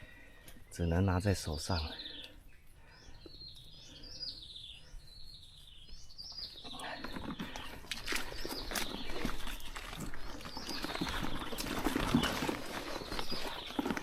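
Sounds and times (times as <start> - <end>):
bird chirping: 0.1 - 14.0
footsteps on wet ground: 7.2 - 14.0.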